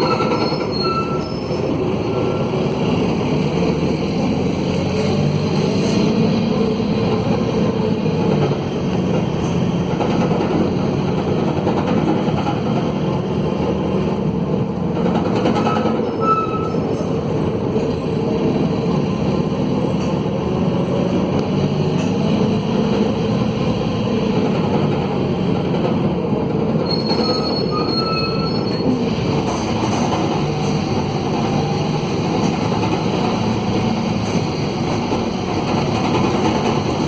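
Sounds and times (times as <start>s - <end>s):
brief high squeal: 0.0s - 2.4s, 15.7s - 17.2s, 26.8s - 29.0s
loud diesel bus engine: 0.0s - 37.0s.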